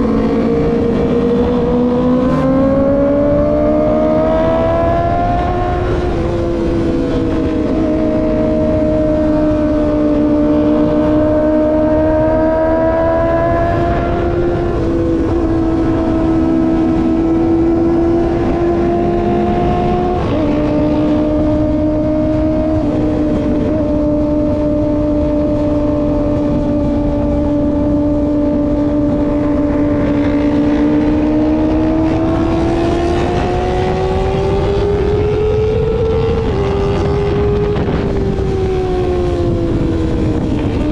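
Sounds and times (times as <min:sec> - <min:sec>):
motorcycle engine cruising: 0:00.0 - 0:40.9
wind rushing: 0:00.0 - 0:40.9.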